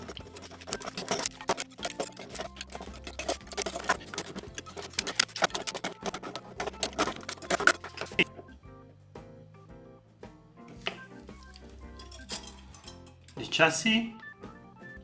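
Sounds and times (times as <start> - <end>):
hand tools clicking on metal chassis: 0.0 - 8.3, 11.9 - 13.5.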